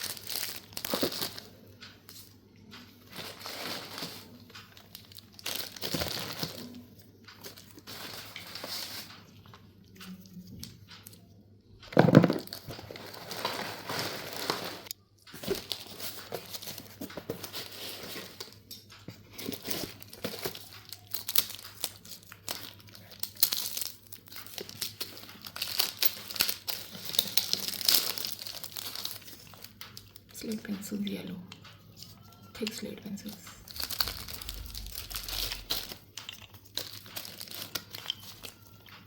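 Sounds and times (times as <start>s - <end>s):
packaging crinkling and tearing: 0.0s - 1.8s, 3.0s - 10.1s, 12.0s - 30.4s, 31.9s - 39.0s.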